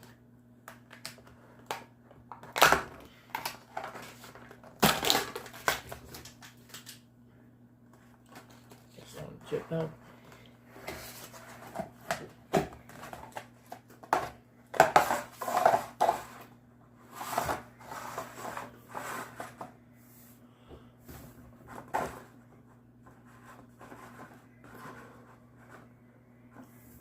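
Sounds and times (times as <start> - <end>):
snack can clicks and rustles: 0.0 - 7.0.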